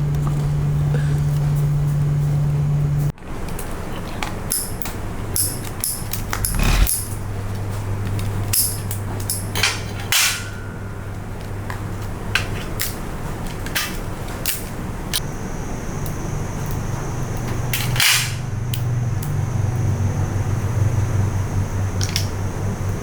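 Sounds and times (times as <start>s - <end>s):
steady low hum: 5.8s - 7.3s.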